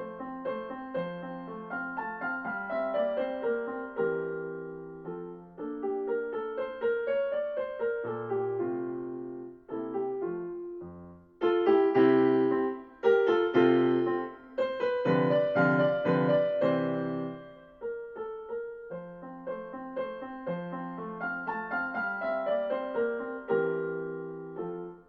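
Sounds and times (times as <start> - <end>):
digital piano playing gentle piece: 0.0 - 25.0.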